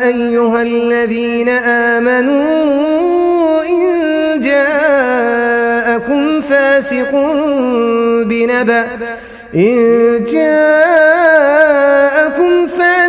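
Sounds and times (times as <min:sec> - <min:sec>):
man reciting melodically: 0:00.0 - 0:13.0.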